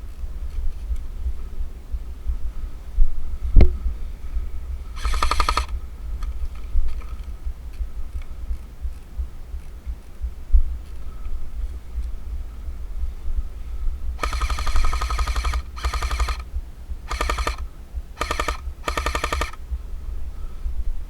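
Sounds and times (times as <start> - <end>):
airsoft gun automatic burst: 5.0 - 6.4, 14.2 - 19.7
sharp click: 5.0 - 7.2, 14.2 - 16.5, 17.1 - 19.6.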